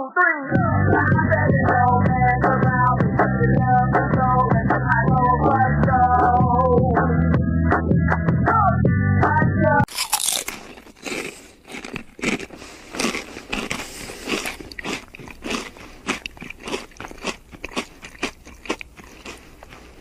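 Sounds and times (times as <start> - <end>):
crunchy chewing: 9.9 - 20.0.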